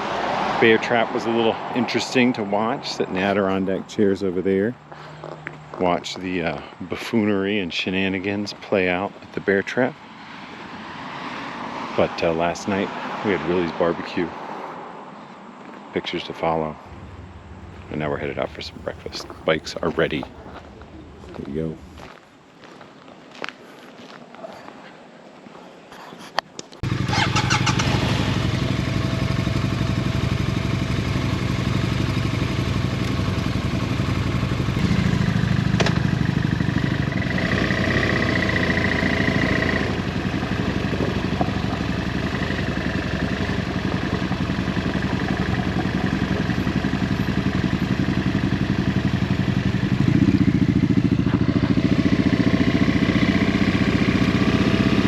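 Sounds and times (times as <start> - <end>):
motorcycle engine idling: 16.8 - 22.1, 26.8 - 55.0.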